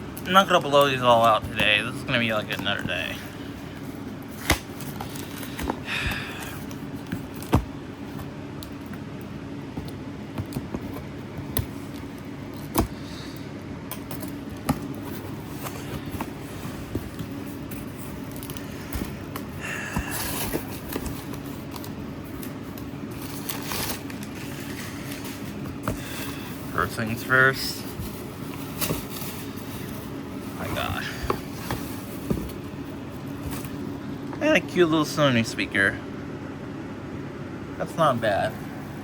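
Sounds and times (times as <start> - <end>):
steady low hum: 0.0 - 39.0
packing material crinkling: 17.3 - 26.8.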